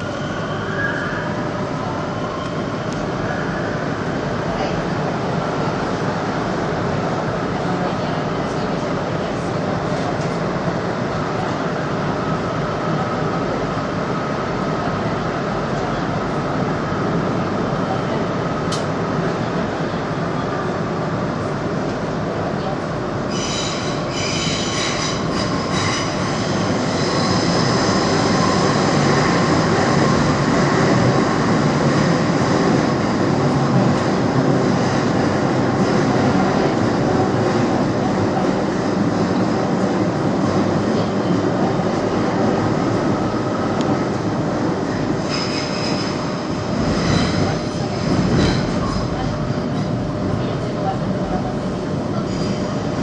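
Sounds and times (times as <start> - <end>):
train wheel squeal: 0.0 - 3.8, 23.3 - 30.3, 45.2 - 47.6, 52.2 - 52.8
train running rumble: 1.2 - 53.0.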